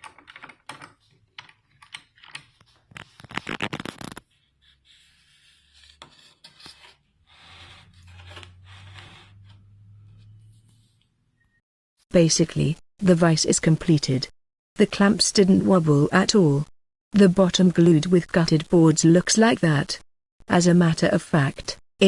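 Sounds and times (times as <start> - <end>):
clicks knocks and scrapes: 5.7 - 11.1.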